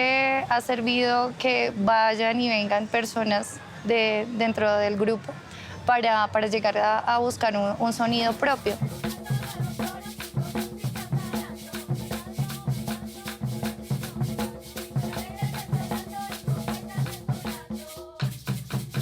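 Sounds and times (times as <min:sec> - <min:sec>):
drums beating a steady rhythm: 0:08.1 - 0:19.0
shakers rattling: 0:08.1 - 0:19.0.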